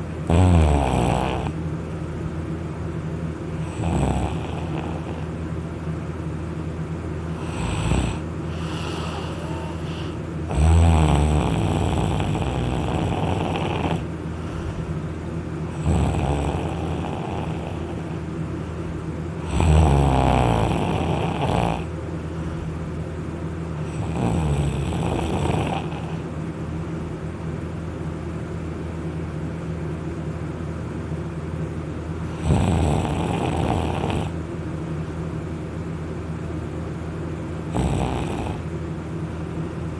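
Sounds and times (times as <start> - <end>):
person snoring heavily: 0.3 - 1.6, 3.6 - 5.4, 7.3 - 14.9, 15.7 - 18.3, 19.4 - 21.9, 23.8 - 26.3, 32.3 - 34.4, 37.7 - 38.7.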